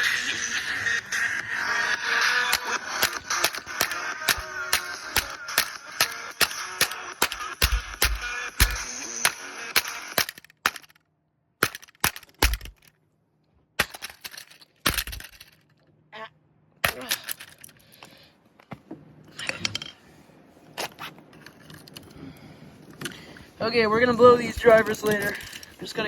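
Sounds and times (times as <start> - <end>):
plastic casing cracking and knocking: 2.6 - 11.0, 11.6 - 12.9, 13.8 - 15.5.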